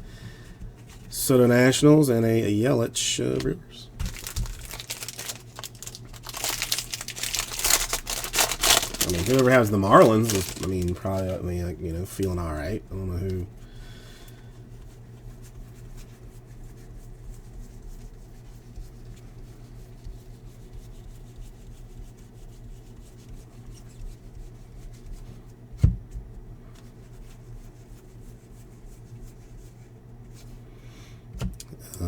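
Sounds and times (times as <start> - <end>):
steady low hum: 0.0 - 32.0
trading cards rubbing and flicking: 3.4 - 11.4.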